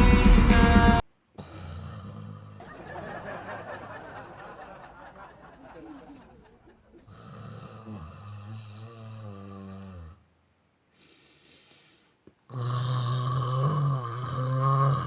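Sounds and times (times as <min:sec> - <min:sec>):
man fake snoring: 0:01.4 - 0:02.7, 0:07.0 - 0:10.2, 0:12.5 - 0:15.0
faint breath: 0:10.9 - 0:12.2.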